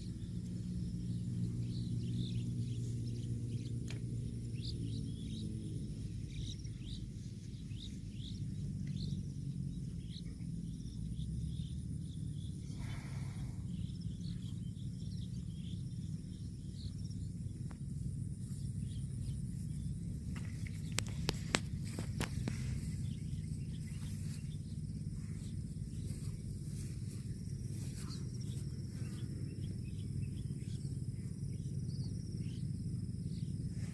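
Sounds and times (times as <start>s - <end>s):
steady low rumble: 0.0s - 33.9s.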